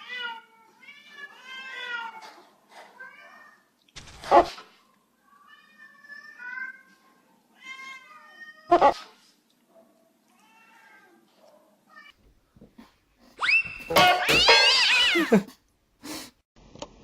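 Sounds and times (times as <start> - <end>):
cat meowing: 0.0 - 2.4, 5.2 - 8.9, 14.0 - 15.3.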